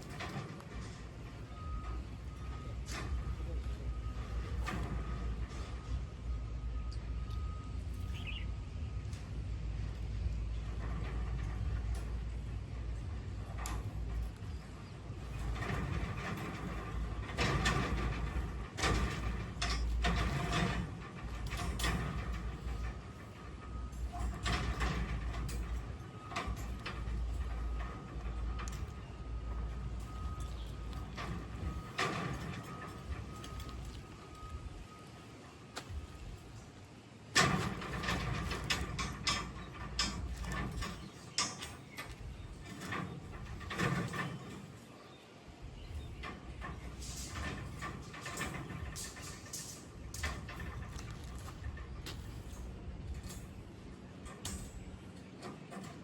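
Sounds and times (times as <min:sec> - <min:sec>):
sharp mechanical clicks and knocks: 0:06.8 - 0:35.1, 0:37.3 - 0:44.9, 0:45.7 - 0:56.0
scraping and clattering: 0:09.1 - 0:35.1, 0:37.4 - 0:45.1, 0:45.7 - 0:56.0.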